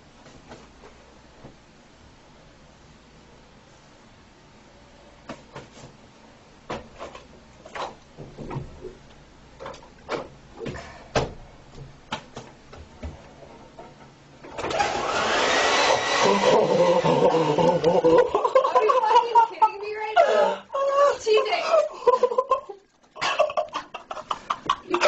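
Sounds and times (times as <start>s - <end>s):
hair dryer blowing: 14.6s - 18.2s.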